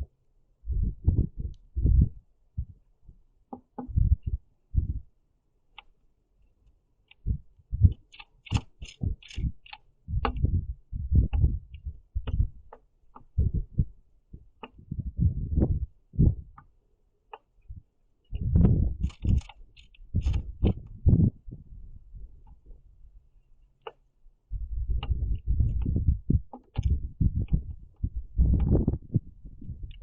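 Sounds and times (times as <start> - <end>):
bird pecking and hopping: 5.7 - 15.7, 18.2 - 21.4, 23.6 - 29.0.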